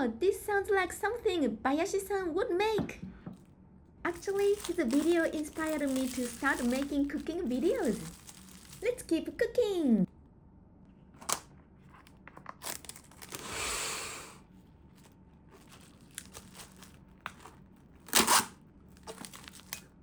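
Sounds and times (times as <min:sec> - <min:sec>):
packaging rustling: 0:04.1 - 0:09.1, 0:11.8 - 0:13.5, 0:14.9 - 0:20.0
plastic packaging crinkling and tearing: 0:04.1 - 0:09.4, 0:11.9 - 0:13.5, 0:14.9 - 0:20.0.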